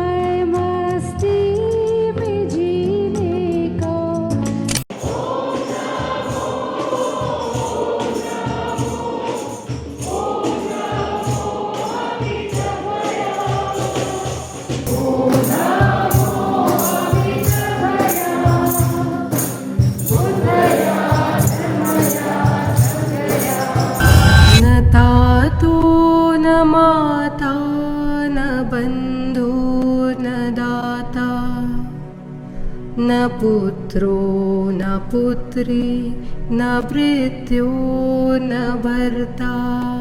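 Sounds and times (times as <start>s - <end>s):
light percussion beat: 4.9s - 26.3s
choir singing long held lines: 4.9s - 26.4s.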